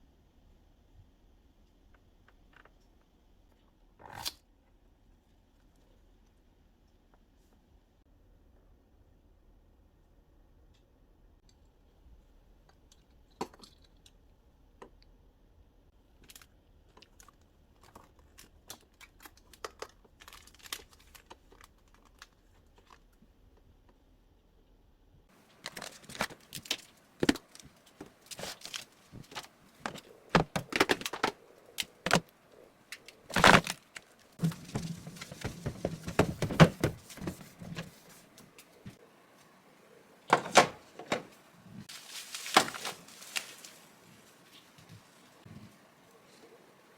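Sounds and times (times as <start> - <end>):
plastic crinkling and rustling: 16.2 - 23.1, 25.4 - 32.2, 33.2 - 38.3, 41.9 - 45.2.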